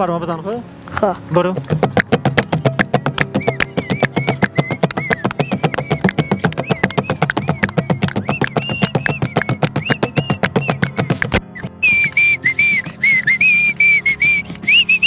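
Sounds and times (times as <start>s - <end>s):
fast strummed lute music: 1.6s - 11.4s.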